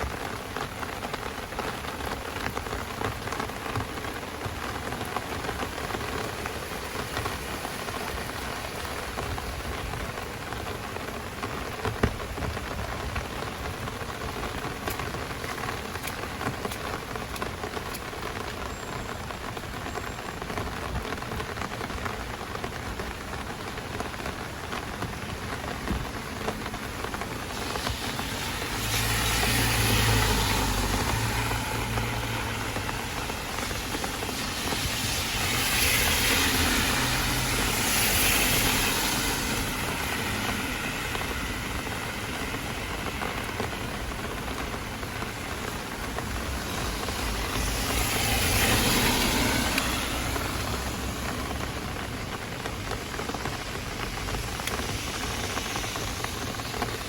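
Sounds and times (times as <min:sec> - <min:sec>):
heavy rain: 0:00.0 - 0:57.0
vehicles passing on wet road: 0:00.0 - 0:57.0.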